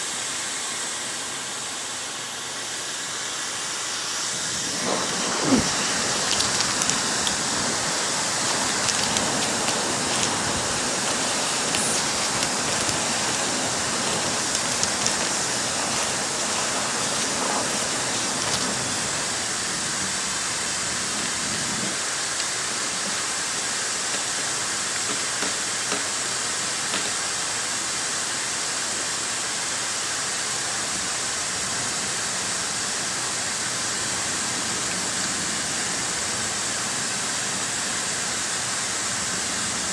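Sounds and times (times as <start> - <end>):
hair dryer running: 4.3 - 20.1.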